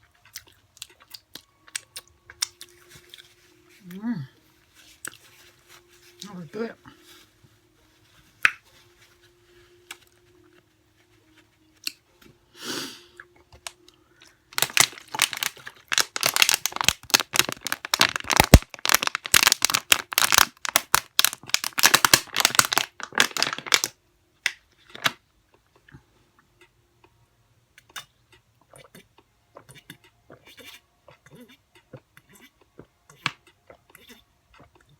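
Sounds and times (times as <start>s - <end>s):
fried chicken crust crunching: 14.2s - 23.9s.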